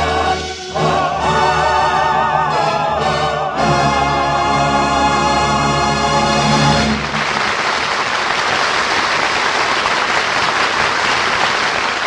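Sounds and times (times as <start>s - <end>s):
orchestra chord: 0.0s - 7.4s
audience applause: 6.8s - 12.0s.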